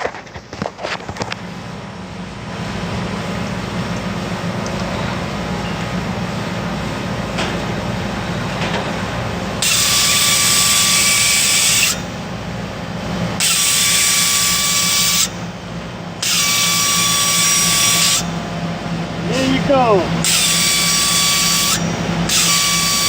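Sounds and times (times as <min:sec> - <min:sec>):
low machine hum: 0:15.3 - 0:23.0.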